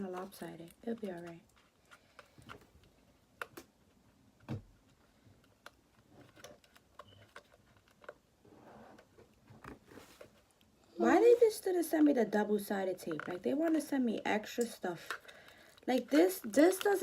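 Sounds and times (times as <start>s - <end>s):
plastic parts clicking and tapping: 11.8s - 17.0s.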